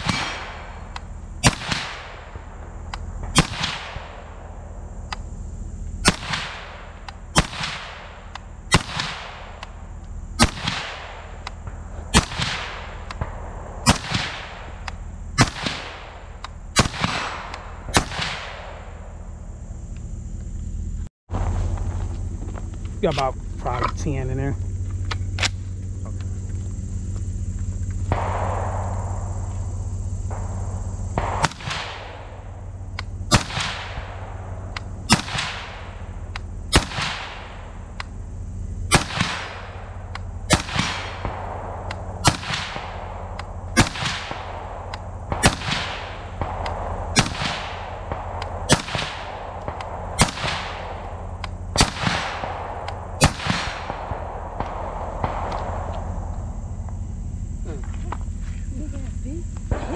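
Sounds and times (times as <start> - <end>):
airsoft gun firing shots: 0.0 - 5.3, 6.0 - 9.8, 10.4 - 19.2, 28.0 - 29.5, 30.2 - 38.2, 38.9 - 56.9.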